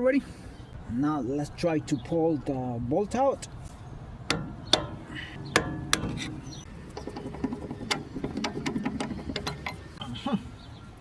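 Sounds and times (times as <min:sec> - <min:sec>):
fast uneven metal rattling: 0:04.7 - 0:10.0.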